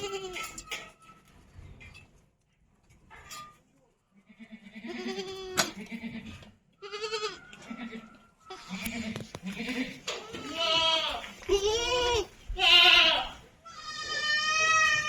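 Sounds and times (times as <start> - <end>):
goat kids bleating: 0.0 - 0.7, 4.3 - 15.0.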